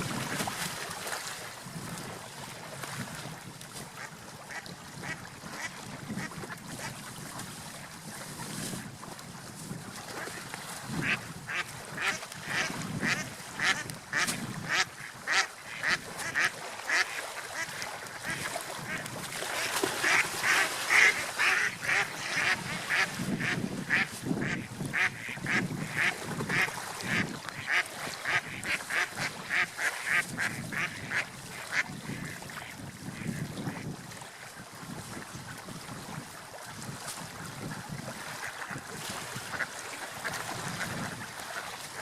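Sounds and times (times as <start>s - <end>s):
ducks quacking: 4.0s - 6.9s, 11.0s - 33.5s.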